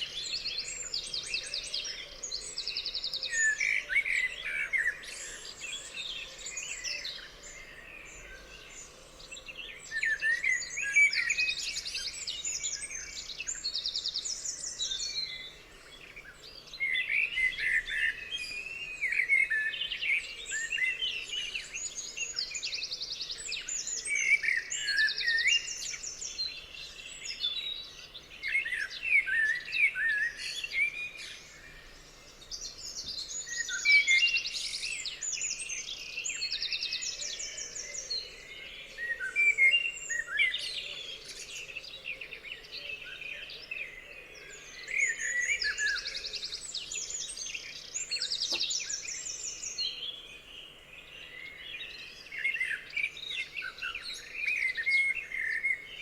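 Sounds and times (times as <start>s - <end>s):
chorus of songbirds singing: 0.0s - 56.0s.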